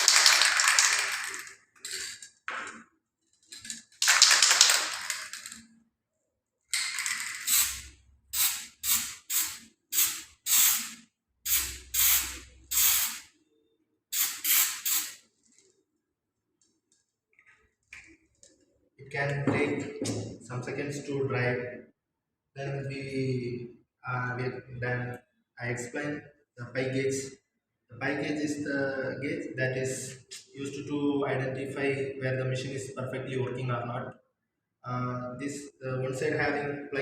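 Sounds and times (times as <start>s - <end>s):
aerosol can spraying in bursts: 7.4s - 13.3s, 14.1s - 15.2s.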